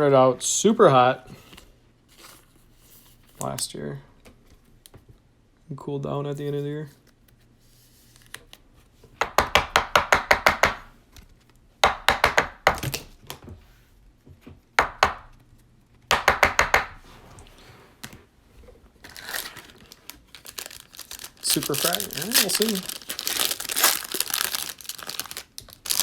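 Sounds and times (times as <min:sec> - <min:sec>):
card wrappers crinkling and clicking: 0:19.0 - 0:26.0.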